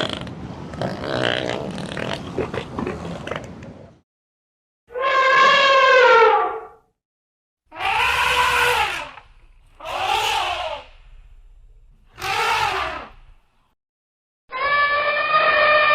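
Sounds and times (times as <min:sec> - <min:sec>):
harsh animal call: 0:07.7 - 0:11.2, 0:12.1 - 0:13.4, 0:14.5 - 0:15.9.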